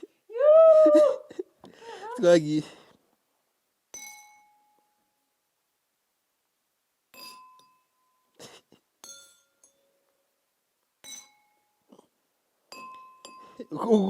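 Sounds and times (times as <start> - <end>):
glasses ringing when struck: 4.0 - 4.8, 7.1 - 8.3, 9.0 - 10.0, 11.0 - 11.8, 12.7 - 13.8.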